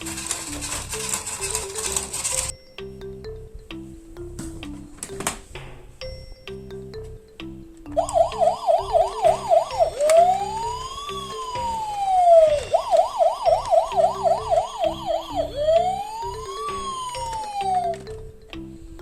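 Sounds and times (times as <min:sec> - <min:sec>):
background music: 0:00.0 - 0:19.0
emergency siren yelp and wail: 0:08.0 - 0:18.1.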